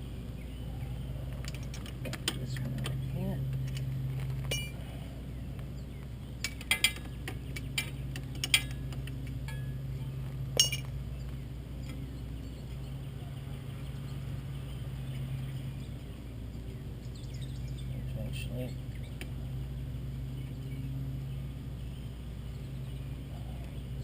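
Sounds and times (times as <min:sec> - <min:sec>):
steady low hum: 0:00.0 - 0:24.0
wrenches clinking on metal: 0:06.4 - 0:09.7.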